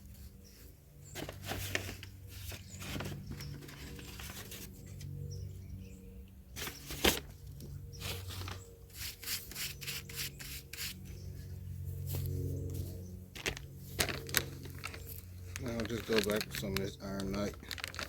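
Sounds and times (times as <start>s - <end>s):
low steady hum: 0.0s - 18.0s
short scrapes and rubs: 8.0s - 11.1s.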